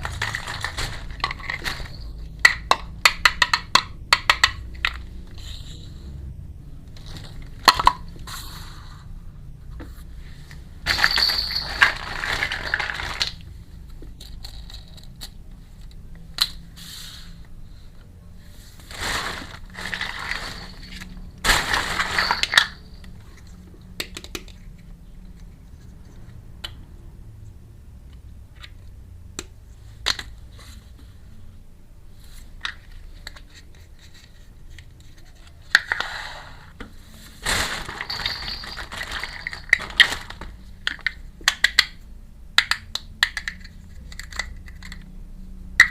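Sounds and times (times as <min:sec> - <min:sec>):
packaging crinkling and rustling: 0:00.0 - 0:02.2, 0:10.9 - 0:13.5, 0:18.8 - 0:23.0, 0:37.3 - 0:40.8.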